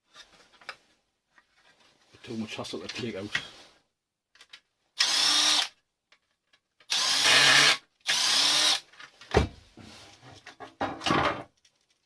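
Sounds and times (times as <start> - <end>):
power drill whining: 5.0 - 5.8, 6.9 - 8.8.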